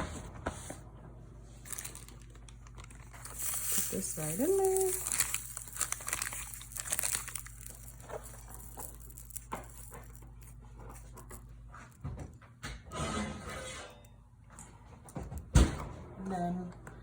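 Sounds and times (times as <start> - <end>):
parchment paper crinkling: 1.6 - 12.0.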